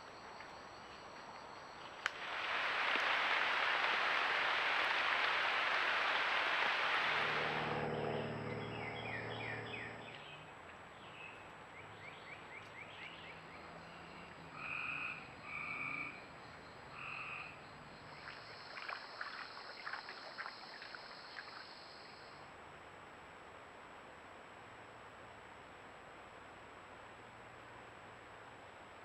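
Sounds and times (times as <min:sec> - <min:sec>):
frogs trilling: 0:13.3 - 0:22.4
frogs clicking rapidly: 0:17.0 - 0:22.1.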